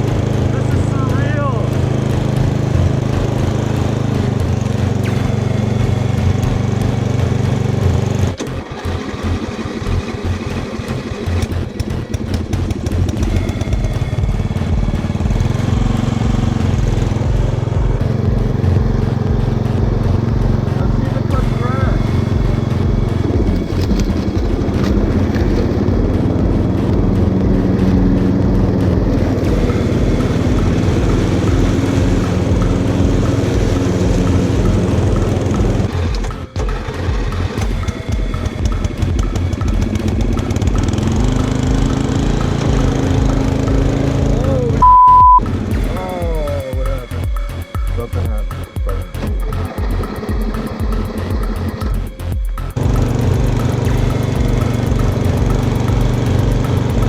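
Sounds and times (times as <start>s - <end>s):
riding lawn mower engine: 0.0s - 57.0s.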